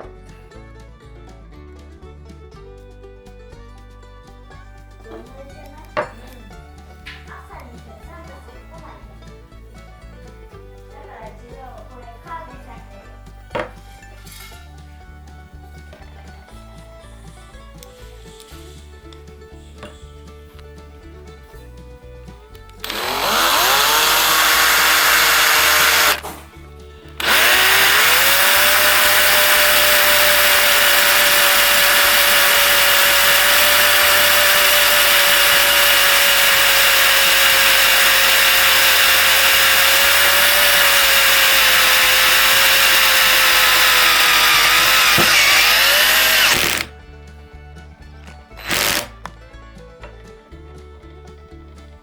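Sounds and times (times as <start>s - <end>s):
cordless power tool motor: 22.8s - 26.4s, 27.0s - 46.9s, 48.5s - 49.3s.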